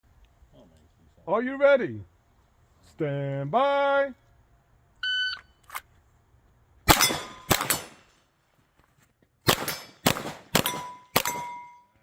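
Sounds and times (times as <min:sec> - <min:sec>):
pistol shots: 0:06.9 - 0:08.1, 0:09.4 - 0:11.7
steel plates ringing: 0:10.6 - 0:12.0.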